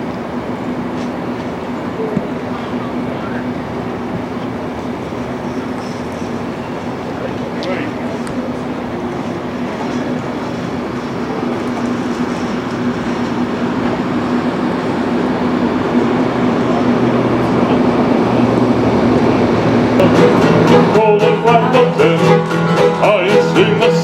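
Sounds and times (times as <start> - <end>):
railway car rushing: 0.0 - 24.0.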